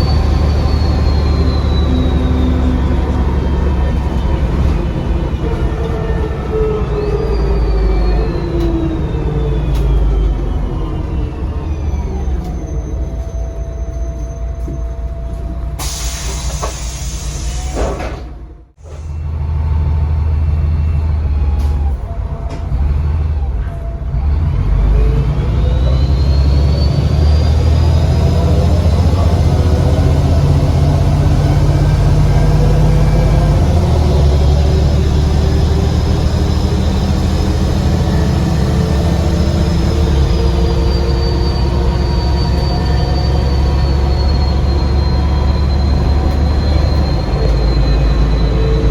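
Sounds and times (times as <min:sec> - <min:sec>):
turbocharger whistle: 0:00.0 - 0:04.0, 0:24.1 - 0:48.9
bus engine accelerating: 0:00.0 - 0:48.9
air brake hiss: 0:15.8 - 0:18.2.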